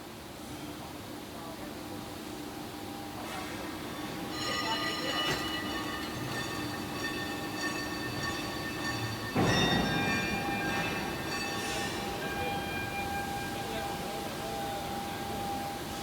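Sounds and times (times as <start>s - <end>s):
high-pitched metallic whines: 3.8s - 16.0s
machinery rumbling: 4.0s - 16.0s.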